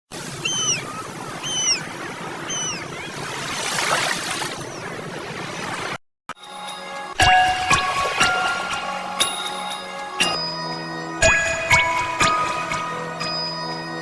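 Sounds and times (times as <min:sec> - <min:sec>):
bird calling: 0:00.2 - 0:03.5.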